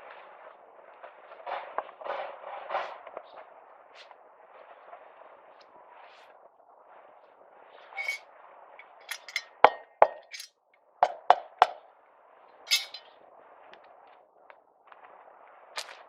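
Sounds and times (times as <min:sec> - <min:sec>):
hard objects knocking and clinking: 0:09.0 - 0:11.8, 0:12.7 - 0:13.0.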